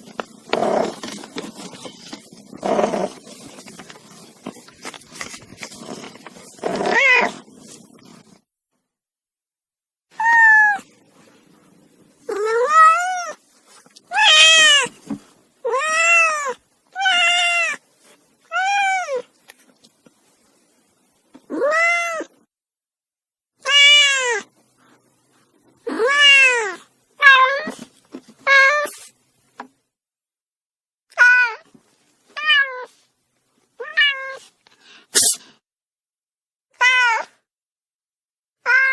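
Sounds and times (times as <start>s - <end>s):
cat yowling: 6.6s - 7.4s, 10.1s - 10.9s, 12.3s - 13.4s, 14.1s - 14.9s, 15.7s - 17.8s, 18.5s - 19.3s, 21.5s - 22.3s, 23.6s - 24.5s, 25.9s - 27.8s, 31.1s - 31.7s, 36.8s - 37.4s, 38.6s - 38.9s.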